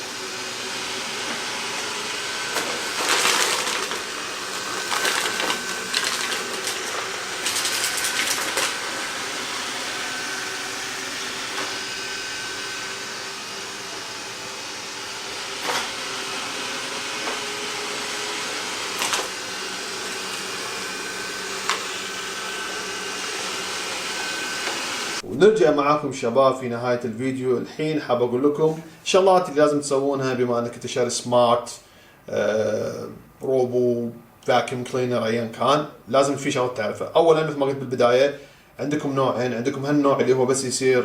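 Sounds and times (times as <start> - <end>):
robot vacuum whirring: 0.0 - 25.2.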